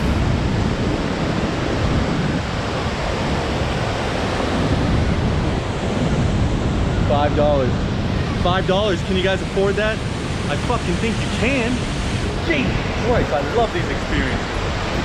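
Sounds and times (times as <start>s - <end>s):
waterfall rushing: 8.5s - 15.0s.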